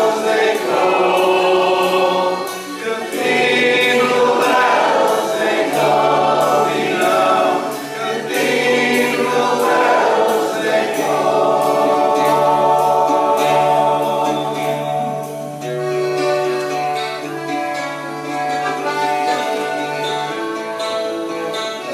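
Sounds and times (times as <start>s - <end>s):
voices singing together: 0.0s - 15.8s.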